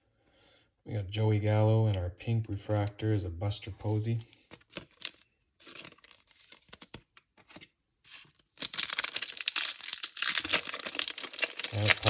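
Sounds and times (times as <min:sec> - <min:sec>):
foil wrapper tearing and crinkling: 0:04.6 - 0:07.0, 0:08.3 - 0:12.0.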